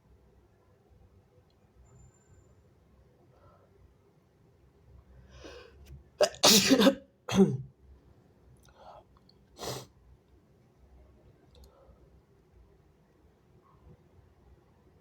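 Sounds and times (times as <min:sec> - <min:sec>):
man sneezing: 0:06.2 - 0:07.6.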